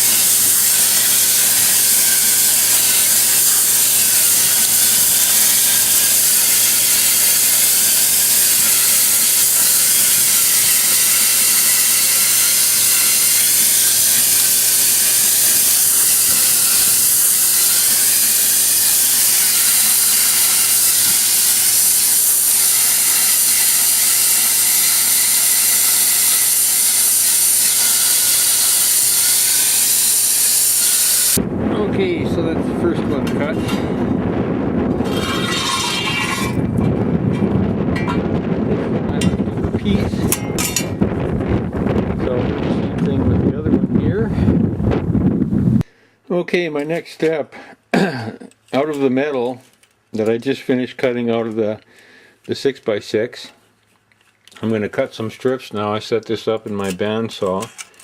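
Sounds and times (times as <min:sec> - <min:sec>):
plasma cutter hissing: 0:00.0 - 0:31.4.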